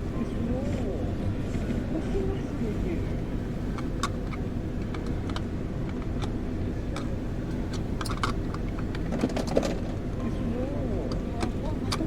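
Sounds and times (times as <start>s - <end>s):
vehicle rumble from inside: 0.0s - 12.0s
light clicks and rattles: 3.2s - 10.0s, 11.1s - 12.0s.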